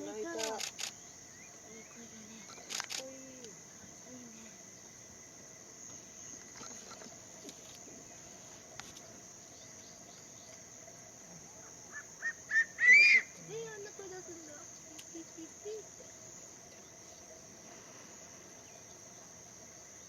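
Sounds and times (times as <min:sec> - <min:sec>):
insects chirring: 0:00.0 - 0:20.0
camera shutter clicks: 0:00.4 - 0:01.0, 0:02.6 - 0:03.1
eagle calling high notes: 0:11.9 - 0:13.4.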